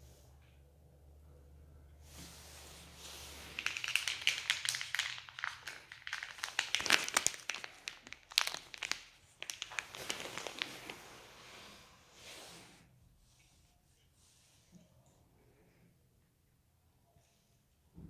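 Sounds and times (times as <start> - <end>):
plastic packaging crinkling: 3.4 - 11.2.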